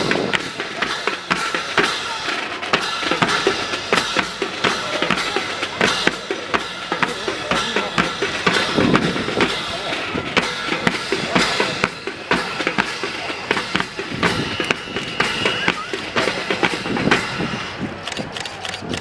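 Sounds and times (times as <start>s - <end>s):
snare and bass drums: 0.0s - 19.0s
held high tone: 10.5s - 18.0s.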